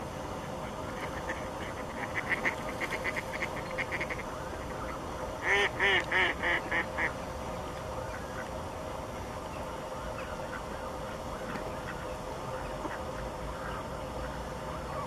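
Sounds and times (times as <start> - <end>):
ducks quacking: 0.4 - 7.2.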